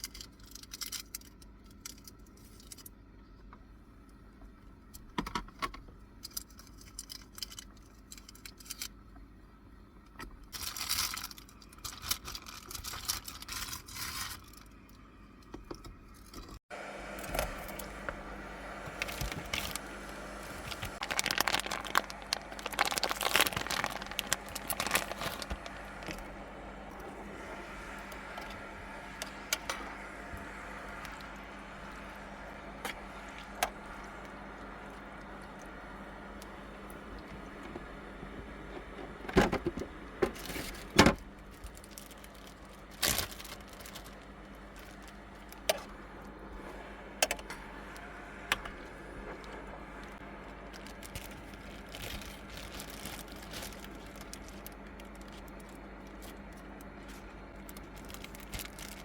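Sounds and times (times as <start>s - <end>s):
steady low hum: 12.8s - 59.0s
rustling: 18.8s - 32.0s, 40.2s - 46.7s, 49.2s - 59.0s.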